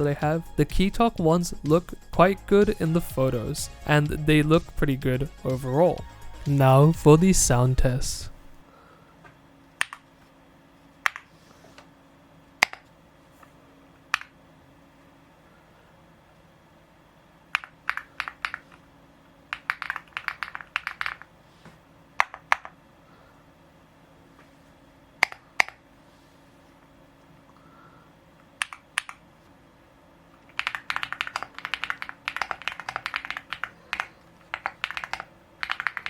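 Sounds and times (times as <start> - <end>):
mechanical keyboard typing: 17.6 - 18.8, 19.5 - 21.3, 28.6 - 29.2, 30.5 - 36.0.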